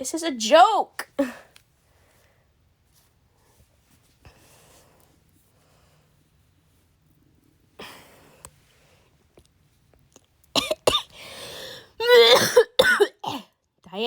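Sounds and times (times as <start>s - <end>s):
person coughing: 10.6s - 11.1s, 12.0s - 13.5s.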